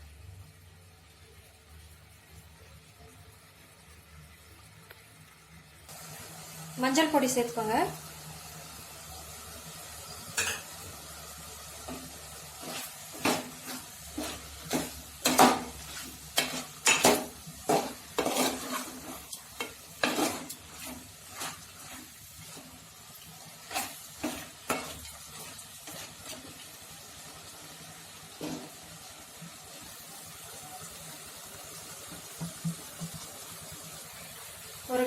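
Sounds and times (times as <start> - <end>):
food sizzling in a pan: 0.0 - 35.0
utensil scraping a pan: 11.8 - 26.6.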